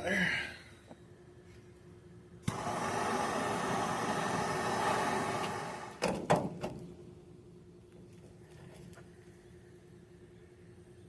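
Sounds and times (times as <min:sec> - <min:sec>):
impact wrench running: 0:02.4 - 0:06.0.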